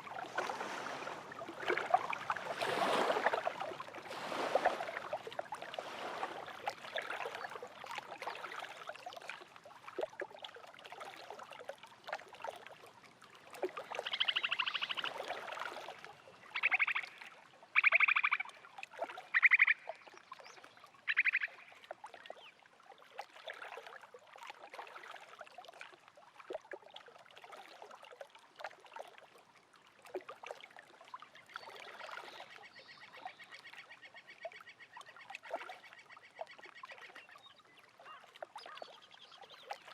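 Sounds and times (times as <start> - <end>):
water bird buzzy calls: 0.0 - 9.2, 13.6 - 22.6, 31.2 - 39.9
small waves lapping at shore: 0.0 - 39.9.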